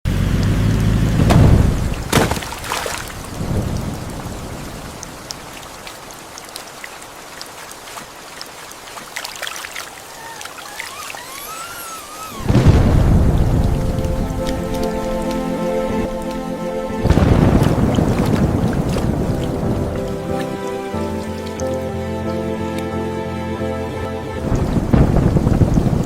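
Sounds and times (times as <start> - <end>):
rain falling: 0.1 - 26.0
thunder crack and rumble: 0.7 - 5.6, 12.4 - 20.3, 24.4 - 26.0
dog whimpering: 10.1 - 12.6.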